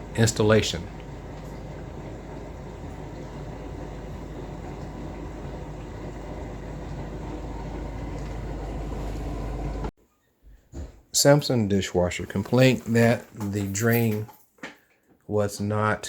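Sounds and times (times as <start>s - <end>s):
machine hum with electrical drone: 0.0s - 9.9s.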